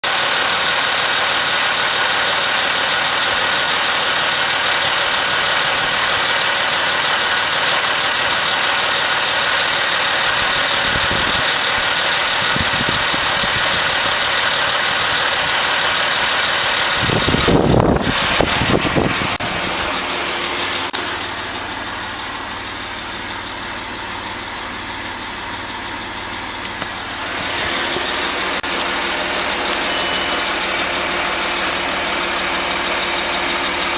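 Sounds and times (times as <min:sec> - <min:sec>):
car engine idling: 0:00.0 - 0:33.9
thin mechanical whine: 0:02.1 - 0:04.2, 0:10.2 - 0:13.5, 0:17.1 - 0:23.8, 0:26.4 - 0:32.0.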